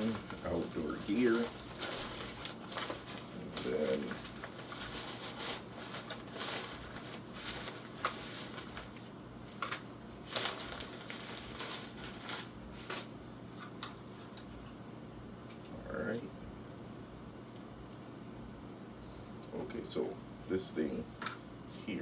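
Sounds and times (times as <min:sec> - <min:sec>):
packaging rustling and crinkling: 0:00.0 - 0:13.2.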